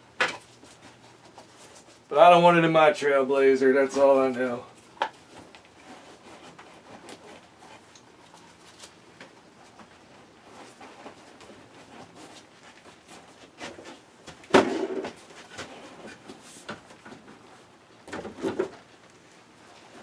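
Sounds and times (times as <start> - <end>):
knocks and clatter of parts: 18.0 - 19.0.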